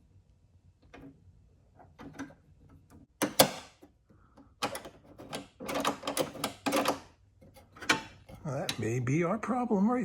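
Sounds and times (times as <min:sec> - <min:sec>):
door latch clicks and taps: 0:03.2 - 0:03.8.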